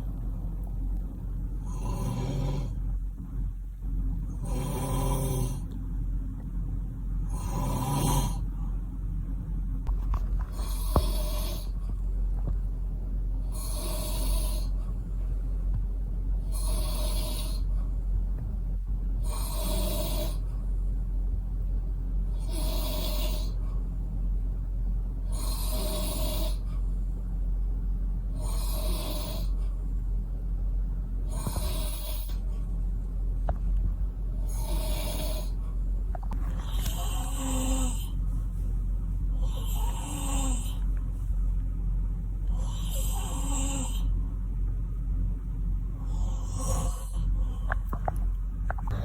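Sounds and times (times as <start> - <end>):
steady low hum: 0.0 - 49.0
man snoring: 1.6 - 2.8, 4.3 - 5.8, 7.3 - 8.5, 10.5 - 11.8, 13.5 - 14.8, 16.4 - 17.7, 19.2 - 20.5, 22.4 - 23.6, 25.3 - 26.7, 28.4 - 29.6, 31.3 - 32.4, 34.4 - 35.6, 36.6 - 38.2, 39.4 - 40.9, 42.5 - 44.2, 46.0 - 47.3.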